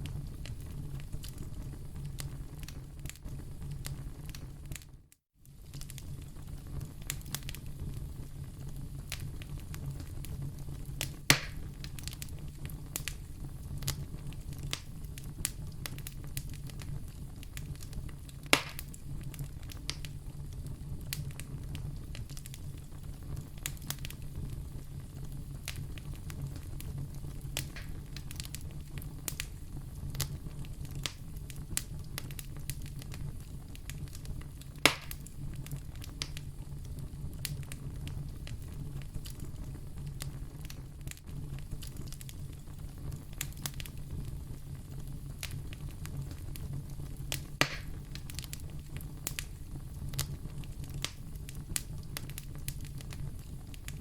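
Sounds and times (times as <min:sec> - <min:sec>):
fire popping: 0:00.0 - 0:54.0
low rumble of flames: 0:00.0 - 0:54.0
wood fire crackling: 0:00.0 - 0:54.0.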